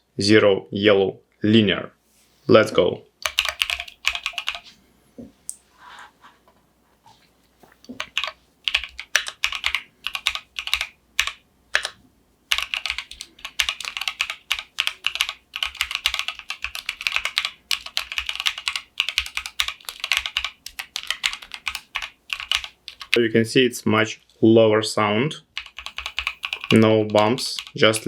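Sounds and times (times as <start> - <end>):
mechanical keyboard typing: 3.2 - 4.6, 8.0 - 23.2, 25.6 - 28.0.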